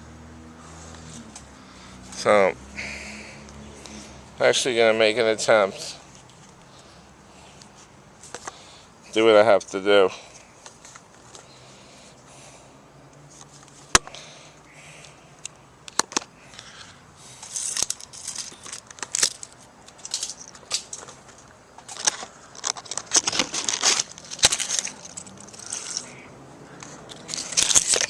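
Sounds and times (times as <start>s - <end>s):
tree branches rustling and dragging: 20.0s - 26.2s.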